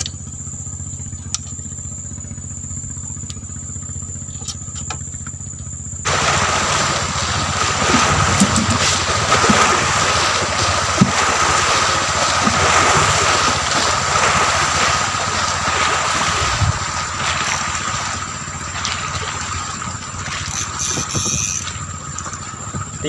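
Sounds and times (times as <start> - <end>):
water: 0.0 - 23.0
wind buffeting microphone: 16.2 - 17.0.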